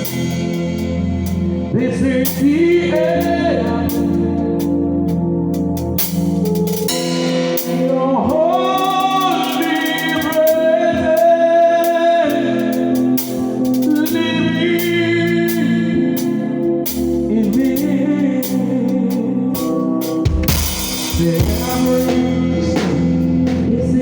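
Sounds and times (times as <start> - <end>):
band with bass and drums: 19.6 - 24.0.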